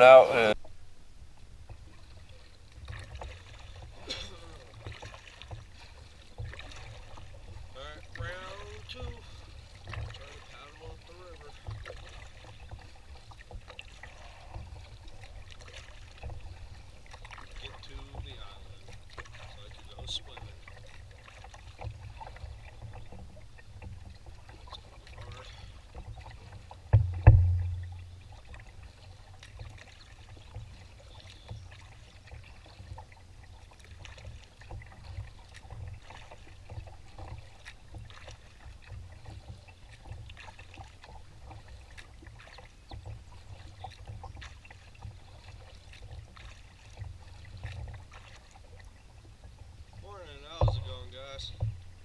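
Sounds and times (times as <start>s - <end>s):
paddle strokes splashing: 1.6s - 52.0s.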